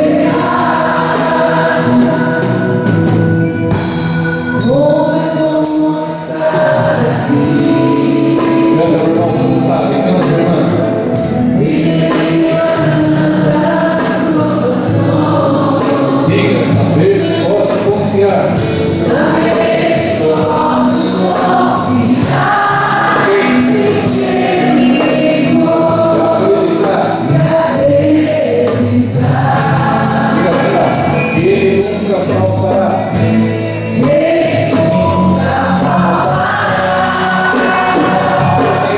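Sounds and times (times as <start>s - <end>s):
band accompaniment: 0.0s - 38.9s
group singing: 0.0s - 38.9s
percussion beat: 5.8s - 27.9s.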